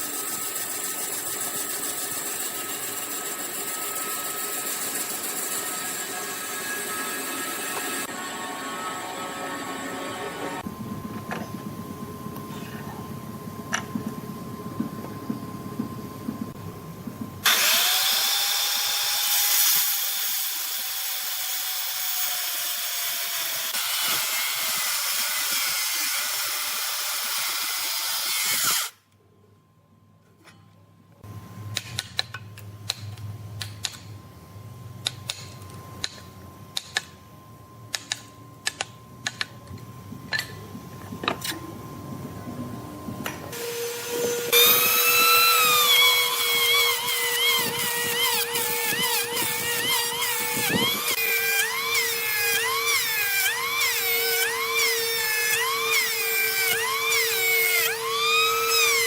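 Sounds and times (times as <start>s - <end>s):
power tool whining on wood: 0.0s - 10.7s, 17.4s - 29.0s, 43.5s - 59.0s.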